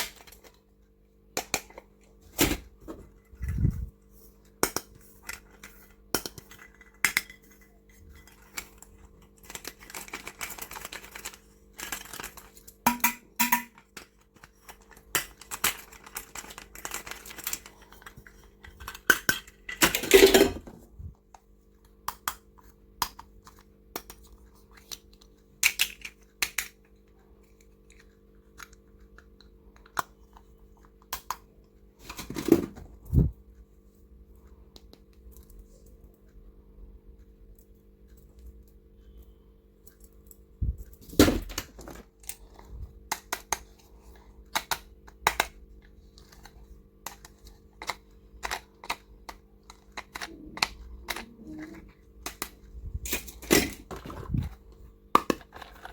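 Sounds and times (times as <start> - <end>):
faint steady hum: 0.0 - 55.9
plastic items clicking and tapping: 4.4 - 20.8, 21.8 - 31.5, 39.9 - 55.9.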